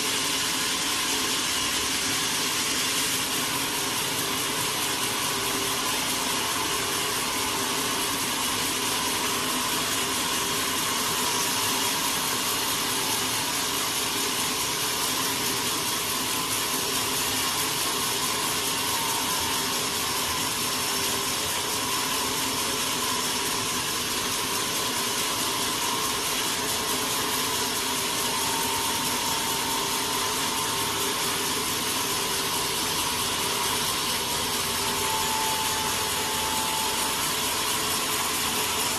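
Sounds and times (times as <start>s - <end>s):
sawmill machinery running: 0.0s - 38.9s.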